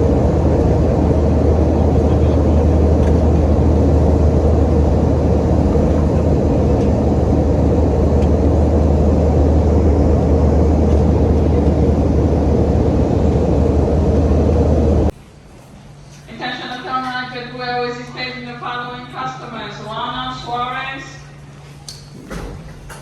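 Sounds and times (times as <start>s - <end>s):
deep hum: 0.0s - 15.1s
jet engine cabin rumble: 0.0s - 15.2s.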